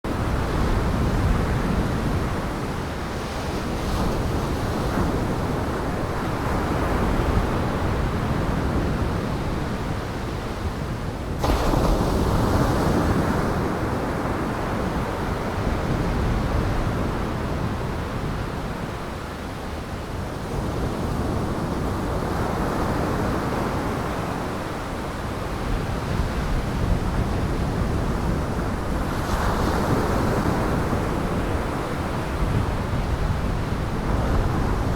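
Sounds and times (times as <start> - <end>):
wind buffeting microphone: 20.1 - 34.9.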